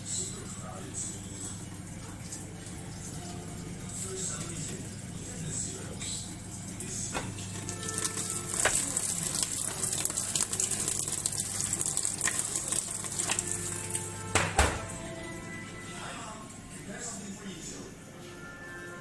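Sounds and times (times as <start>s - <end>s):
washing machine knock: 7.0s - 7.7s, 14.2s - 15.2s.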